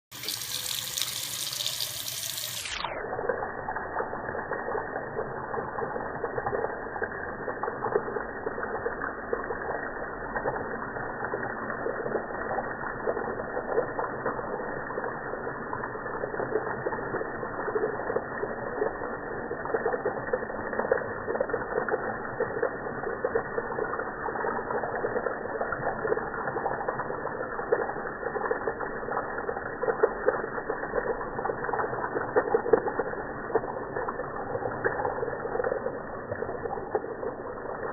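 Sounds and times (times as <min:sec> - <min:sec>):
slowed running tap water: 0:00.0 - 0:37.9.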